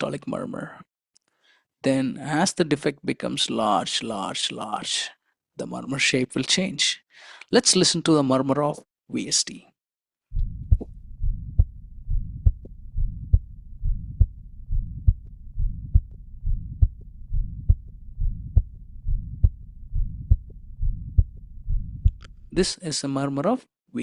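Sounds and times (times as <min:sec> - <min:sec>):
heartbeats: 0:10.3 - 0:22.6
low heart murmur: 0:10.4 - 0:22.2.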